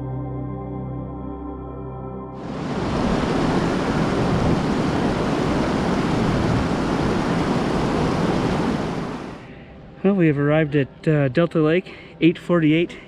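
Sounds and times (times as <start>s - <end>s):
wind buffeting microphone: 2.4s - 9.4s.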